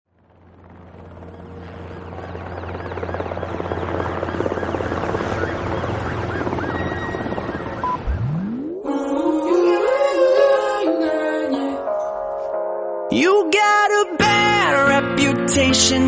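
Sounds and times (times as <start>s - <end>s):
rapid rotor-like pulsing drone: 0.2s - 10.6s
rising sweep: 7.1s - 11.9s
low hum: 7.2s - 10.7s.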